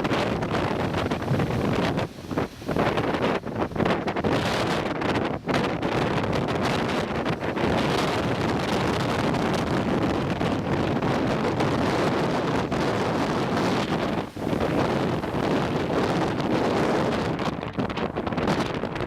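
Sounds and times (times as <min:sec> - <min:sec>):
ocean surf rushing: 0:00.0 - 0:19.0
wind buffeting microphone: 0:00.0 - 0:19.0.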